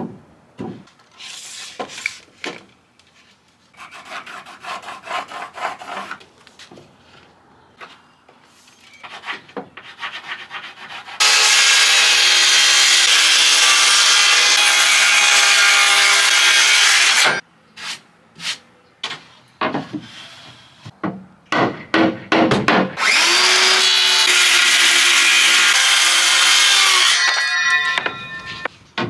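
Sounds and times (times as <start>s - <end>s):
power tool running on wood: 23.0s - 27.2s.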